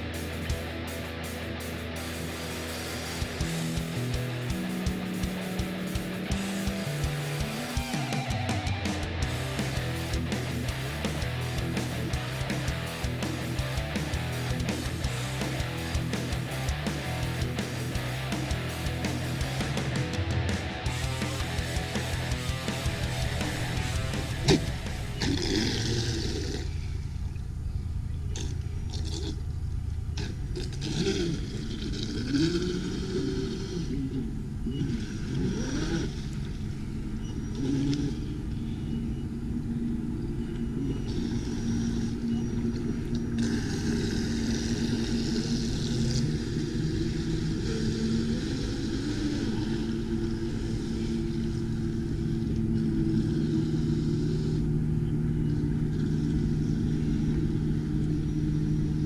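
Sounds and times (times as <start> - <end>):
steady rushing noise: 0.0 - 25.7.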